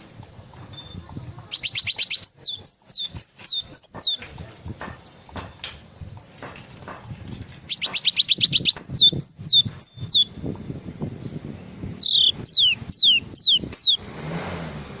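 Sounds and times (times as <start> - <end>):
bird chirping trill: 0.7 - 4.3, 7.7 - 10.4, 11.9 - 14.0.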